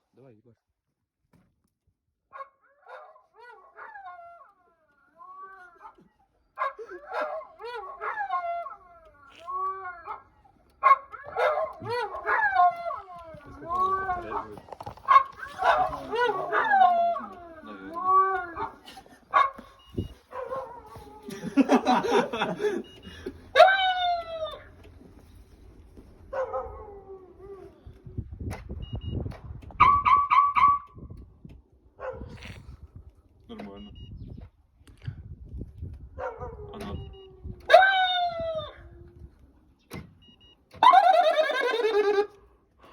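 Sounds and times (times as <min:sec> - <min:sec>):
dog howling: 0:02.8 - 0:18.8, 0:23.6 - 0:24.7, 0:36.4 - 0:39.2, 0:40.8 - 0:42.3
person howling like car alarm: 0:11.7 - 0:14.4, 0:15.6 - 0:18.8, 0:40.8 - 0:42.4.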